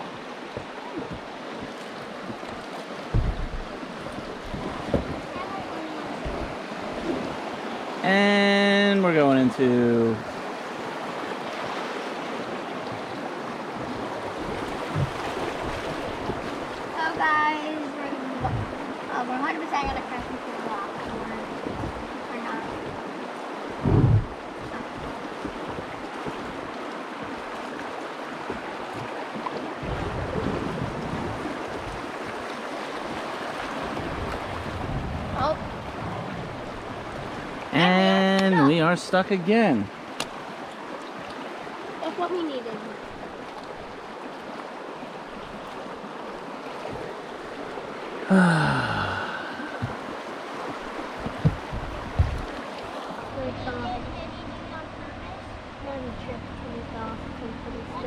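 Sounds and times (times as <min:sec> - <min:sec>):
river water rushing and splashing: 0:00.0 - 0:58.0
knock: 0:03.1 - 0:03.7, 0:23.8 - 0:24.3, 0:51.2 - 0:52.5
heavy low rumble: 0:23.8 - 0:24.4.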